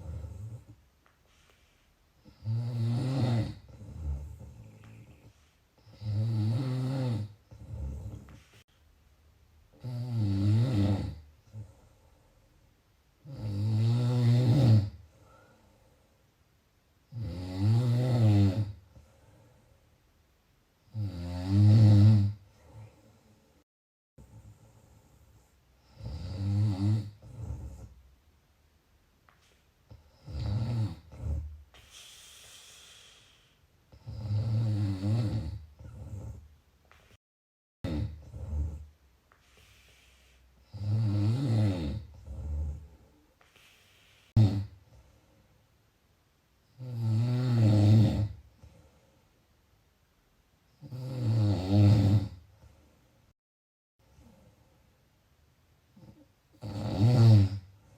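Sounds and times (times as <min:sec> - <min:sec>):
pitched snoring: 0:00.0 - 0:00.8, 0:02.2 - 0:08.5, 0:09.8 - 0:11.8, 0:13.2 - 0:15.0, 0:17.1 - 0:18.8, 0:20.9 - 0:22.4, 0:25.8 - 0:28.0, 0:29.9 - 0:36.5, 0:37.9 - 0:38.9, 0:40.6 - 0:43.1, 0:44.2 - 0:44.8, 0:46.8 - 0:48.4, 0:50.8 - 0:52.4, 0:56.0 - 0:57.7
breathy out-breath: 0:31.8 - 0:33.7.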